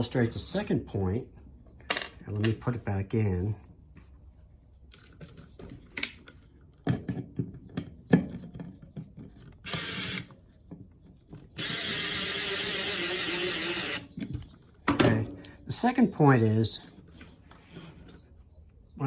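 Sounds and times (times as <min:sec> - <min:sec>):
electric screwdriver whining: 0:09.7 - 0:10.3, 0:11.6 - 0:14.1.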